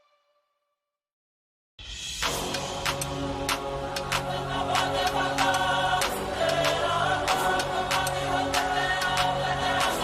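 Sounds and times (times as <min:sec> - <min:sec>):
choir-like chords: 0:02.2 - 0:10.0.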